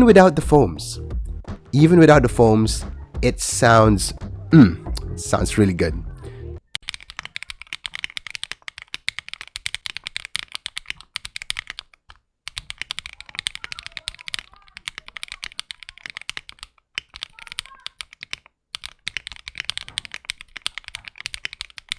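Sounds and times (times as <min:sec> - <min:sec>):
mechanical keyboard typing: 0:06.7 - 0:21.9.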